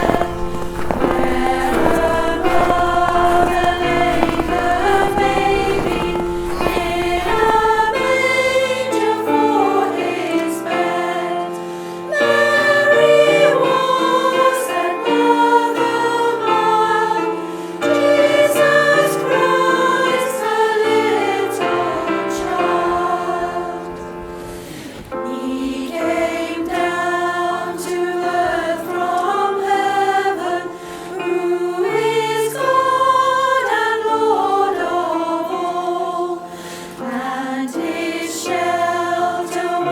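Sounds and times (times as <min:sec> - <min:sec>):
women's choir singing in parts: 0:00.0 - 0:39.9.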